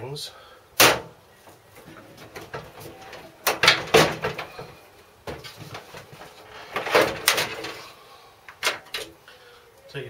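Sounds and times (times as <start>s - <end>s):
metallic knocks and clatters: 1.8s - 7.8s.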